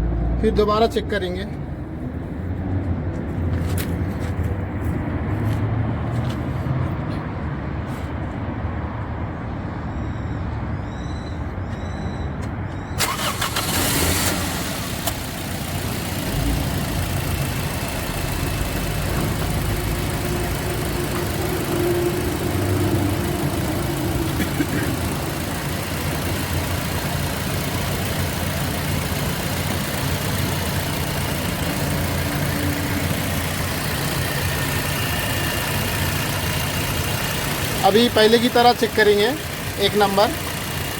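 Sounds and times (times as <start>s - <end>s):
car engine idling: 13.0s - 40.9s.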